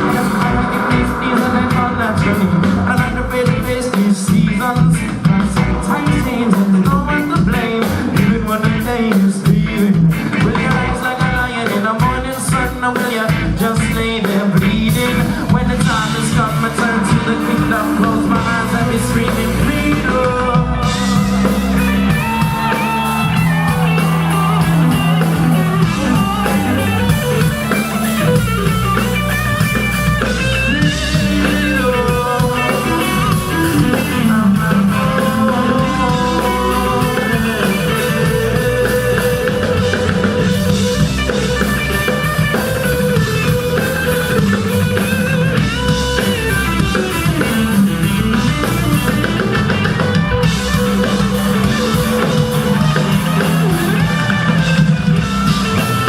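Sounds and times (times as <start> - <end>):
bass: 0.0 - 56.0
drum kit: 0.0 - 56.0
guitar lines: 0.0 - 56.0
live band playing reggae rock: 0.0 - 56.0.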